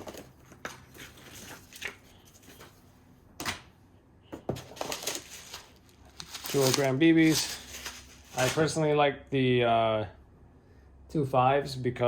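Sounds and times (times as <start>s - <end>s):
packaging being handled: 4.4s - 8.8s.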